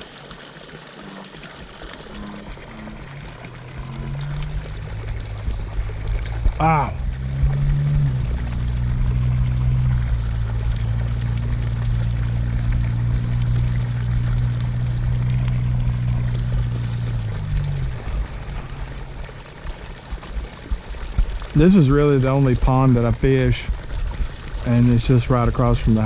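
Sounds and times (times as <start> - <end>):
low motor hum: 0.0 - 26.0
water trickling: 0.0 - 26.0.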